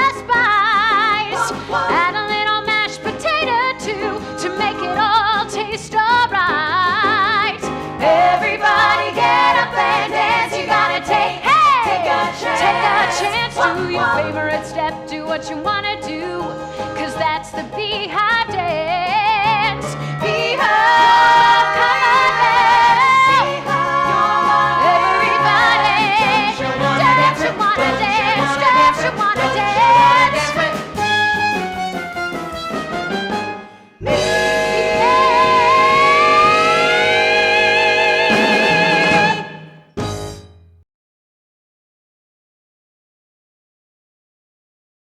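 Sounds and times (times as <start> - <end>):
women singing pop song: 0.0 - 30.9, 34.0 - 39.7
backing music: 0.0 - 40.8
band playing: 20.6 - 40.4.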